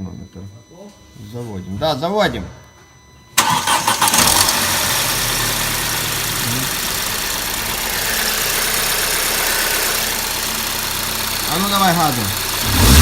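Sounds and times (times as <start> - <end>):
car engine idling: 3.4 - 13.0.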